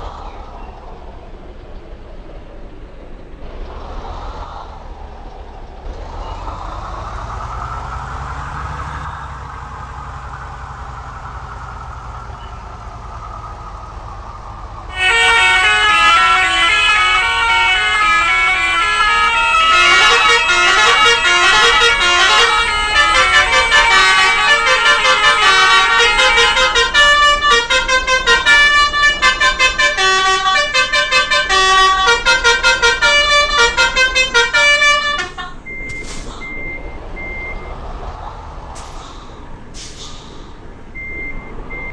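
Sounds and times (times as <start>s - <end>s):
bus engine running: 0.0s - 41.9s
bus horn playing a melody: 14.9s - 35.6s.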